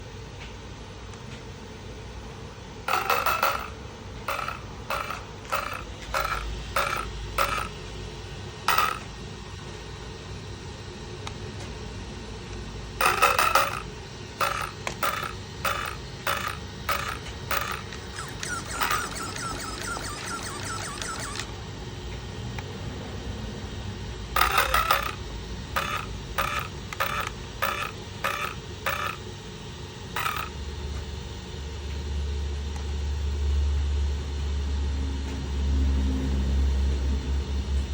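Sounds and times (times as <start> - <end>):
electric motor whining pulses: 2.8 - 9.1, 13.0 - 29.3, 30.0 - 30.6
electronic beeps: 14.4 - 21.6.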